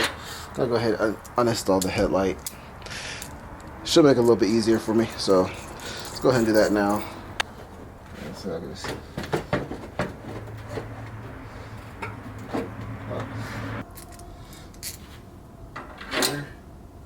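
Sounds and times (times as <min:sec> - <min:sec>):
tools and parts clattering: 0:03.2 - 0:16.6.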